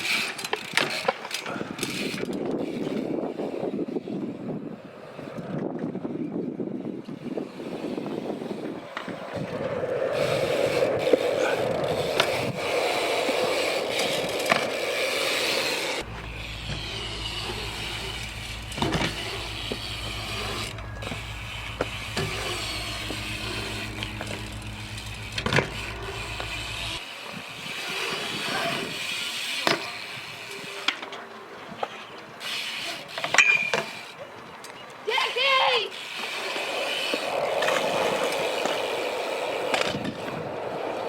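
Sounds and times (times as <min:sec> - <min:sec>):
bike tyres rolling and scraping: 0:00.0 - 0:41.0
steady low hum: 0:16.0 - 0:27.0.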